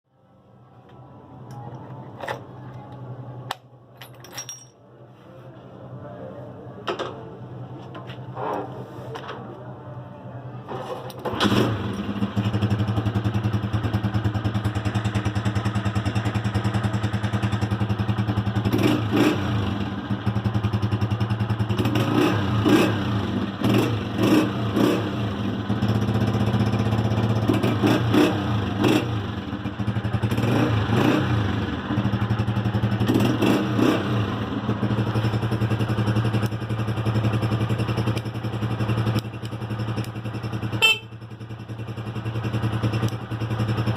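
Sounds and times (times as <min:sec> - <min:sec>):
motorcycle engine idling and revving: 0:10.7 - 0:43.9.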